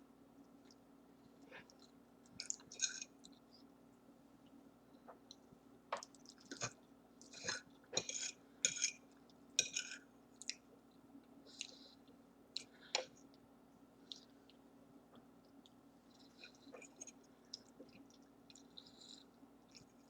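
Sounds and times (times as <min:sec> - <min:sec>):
person chewing with wet smacks: 0:00.4 - 0:03.7, 0:04.4 - 0:20.0.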